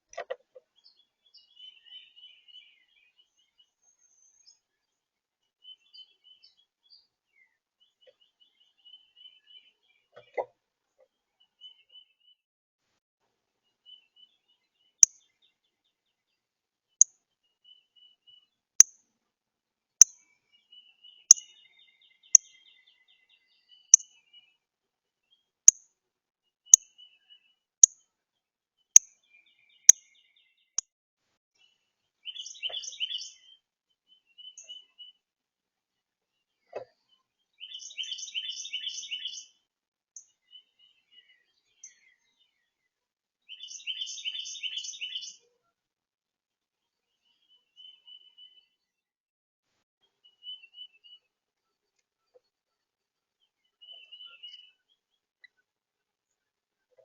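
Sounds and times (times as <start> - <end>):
faint calls of other birds: 0.0 - 5.0, 5.6 - 12.4, 20.2 - 24.6, 31.6 - 35.2, 36.3 - 39.6, 40.2 - 45.8, 46.9 - 48.9, 50.0 - 52.5, 53.4 - 55.7
busy bird chirping: 0.6 - 4.6, 5.6 - 10.4, 20.0 - 24.6, 31.6 - 35.2, 37.0 - 39.5, 43.5 - 45.5, 47.1 - 48.8, 53.4 - 55.6.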